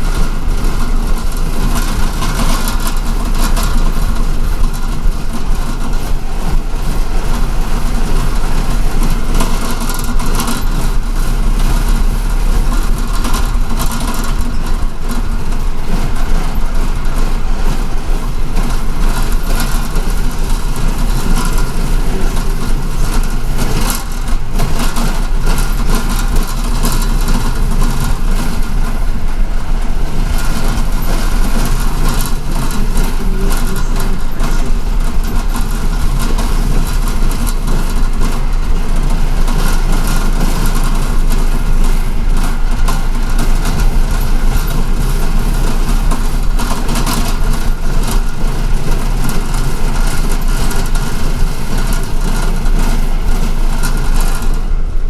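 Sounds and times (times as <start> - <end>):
bus engine and road drone: 0.0 - 55.0
small rattles: 0.0 - 55.0.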